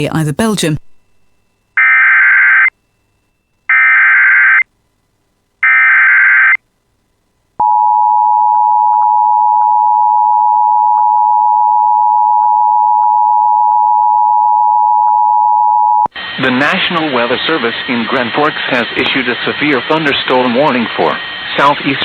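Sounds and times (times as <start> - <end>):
screeching data tones: 1.0 - 4.6.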